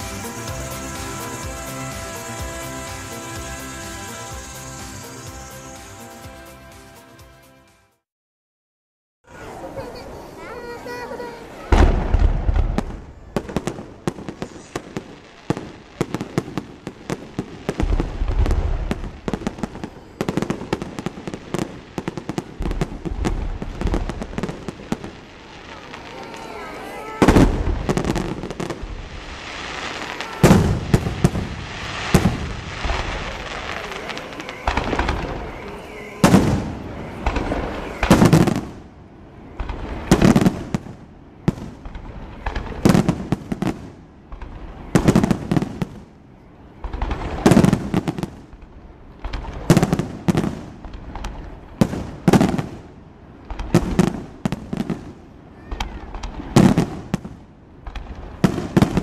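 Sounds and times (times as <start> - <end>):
fireworks shells bursting: 0.0 - 7.7, 13.6 - 25.2.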